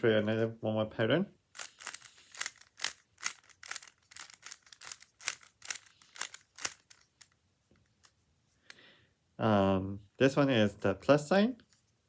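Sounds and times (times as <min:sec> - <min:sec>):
plastic clacks of puzzle cube twisting: 0:01.6 - 0:08.8.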